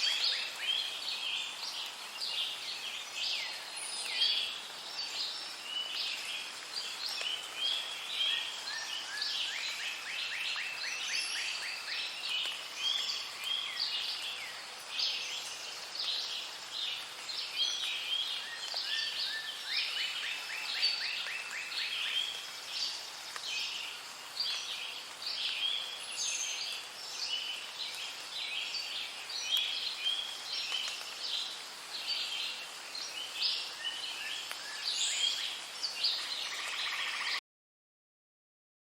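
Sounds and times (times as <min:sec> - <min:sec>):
songbirds chirping in chorus: 0:00.0 - 0:37.4.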